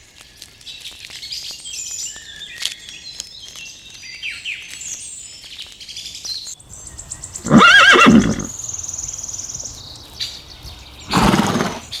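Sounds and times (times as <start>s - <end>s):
faint bird chirps: 6.7s - 12.0s
horse whinnying: 6.7s - 12.0s.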